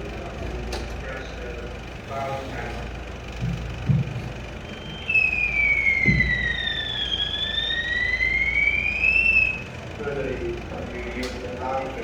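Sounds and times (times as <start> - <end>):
fire alarm siren: 4.6 - 9.9
dull thump: 6.0 - 6.5.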